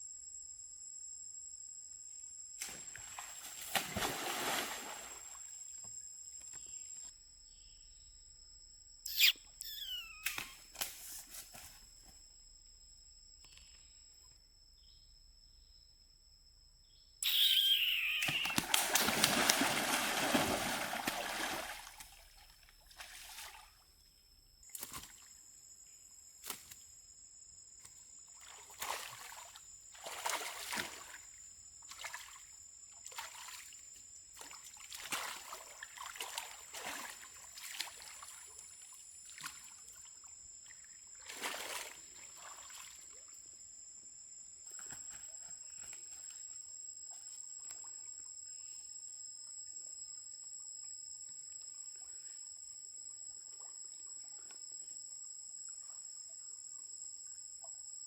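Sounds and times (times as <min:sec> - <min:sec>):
water sloshing and splashing: 0:02.8 - 0:05.4, 0:18.2 - 0:23.8, 0:34.4 - 0:38.6, 0:39.3 - 0:43.4
high-pitched tone: 0:17.2 - 0:18.6.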